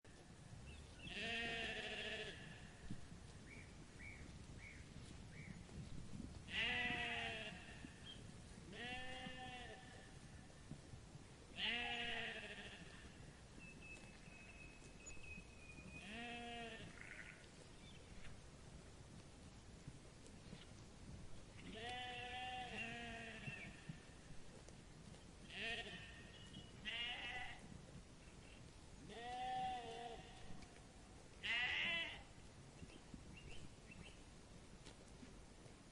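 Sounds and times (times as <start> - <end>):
sheep bleating: 1.1 - 2.7, 6.5 - 7.9, 8.7 - 10.1, 11.6 - 13.2, 16.0 - 17.4, 21.7 - 23.7, 25.5 - 27.6, 29.1 - 30.6, 31.4 - 32.3.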